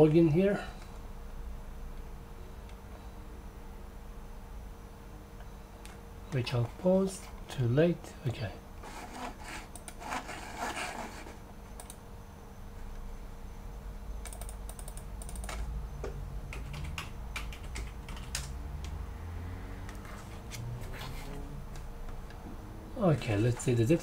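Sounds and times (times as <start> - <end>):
computer keyboard typing: 11.8 - 12.0, 14.2 - 15.7, 16.5 - 19.0.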